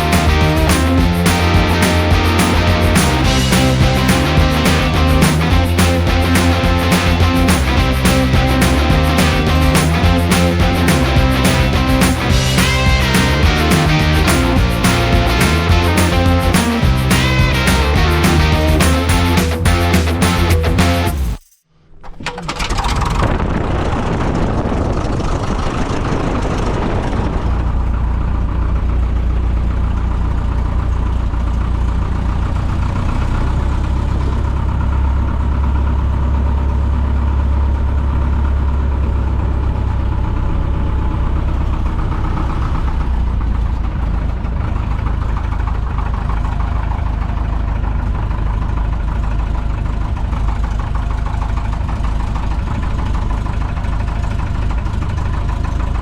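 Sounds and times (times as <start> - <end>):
propeller aircraft engine drone: 23.7 - 56.0.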